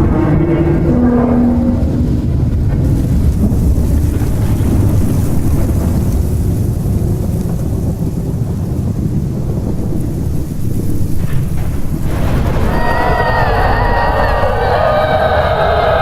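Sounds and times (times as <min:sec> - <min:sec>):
low wailing tone: 0:00.0 - 0:02.4, 0:12.2 - 0:16.0
deep rumble: 0:00.0 - 0:16.0.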